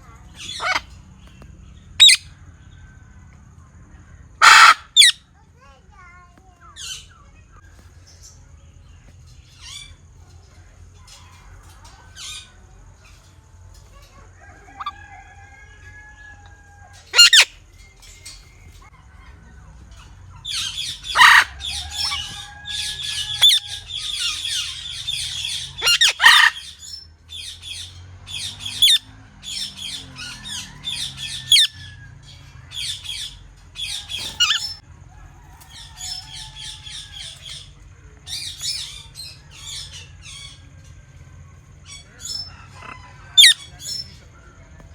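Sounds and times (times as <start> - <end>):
parakeets squawking and chirping: 0.0 - 2.8, 4.2 - 5.3, 6.6 - 8.4, 9.4 - 10.3, 14.7 - 34.8, 35.5 - 41.0, 41.6 - 44.2
parakeet screeches: 0.4 - 0.9, 2.0 - 2.2, 4.4 - 5.2, 17.1 - 17.5, 20.4 - 27.9, 32.8 - 34.8, 42.3 - 43.7.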